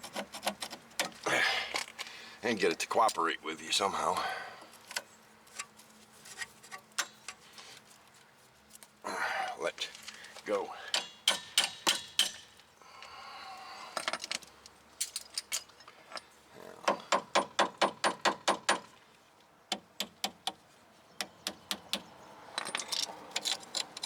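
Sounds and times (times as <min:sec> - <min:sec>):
metallic clicks and rattles: 0:22.6 - 0:24.0.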